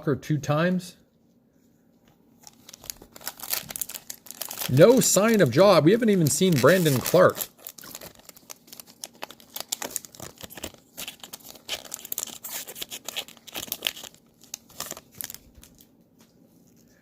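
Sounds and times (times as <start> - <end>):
cards rustling: 2.4 - 15.9
foil wrapper tearing and crinkling: 2.4 - 15.9.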